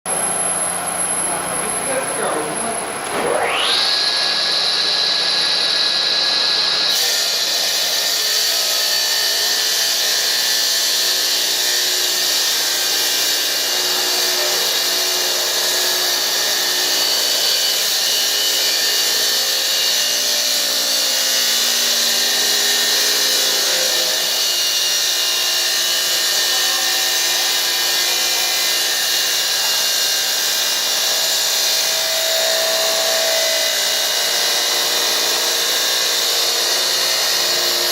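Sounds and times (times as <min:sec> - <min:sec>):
vacuum cleaner motor whine: 0:00.1 - 0:08.2.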